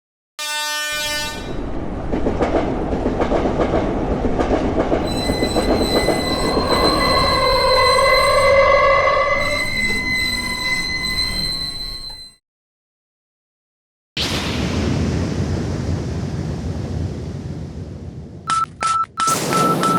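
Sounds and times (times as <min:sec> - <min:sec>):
train clattering on rails: 0:00.9 - 0:08.6, 0:18.5 - 0:19.9
high-pitched wheel squeal: 0:05.0 - 0:12.4
short pitched tone: 0:05.1 - 0:12.4
wavering horn-like tone: 0:05.1 - 0:12.4.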